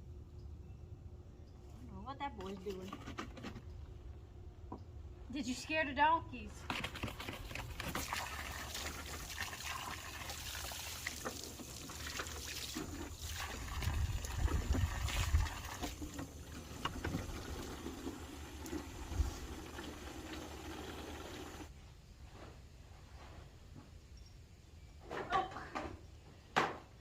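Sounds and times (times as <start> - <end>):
hose water splashing: 7.0 - 21.7.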